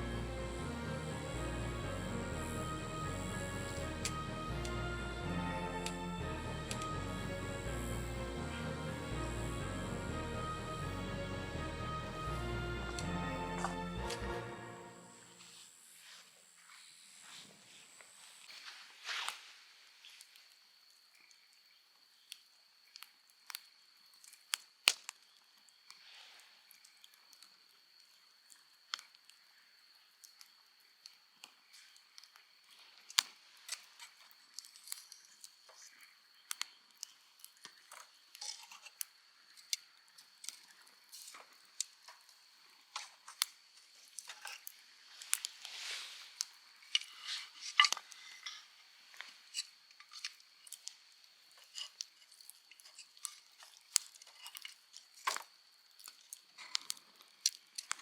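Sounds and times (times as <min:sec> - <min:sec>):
faint high whine: 0:00.0 - 0:19.2.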